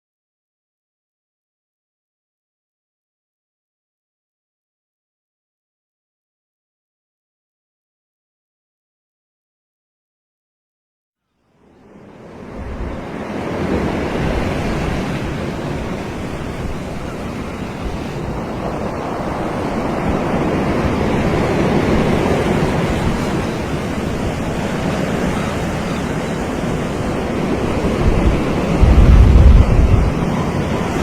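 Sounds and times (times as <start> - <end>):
surf washing onto beach: 11.8 - 31.0
wind rumble on microphone: 11.8 - 31.0.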